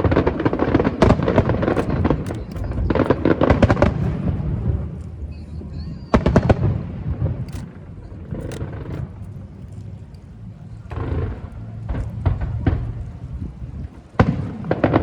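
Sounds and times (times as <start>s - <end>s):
fireworks bursting: 0.0s - 5.0s
low rumble: 0.0s - 14.5s.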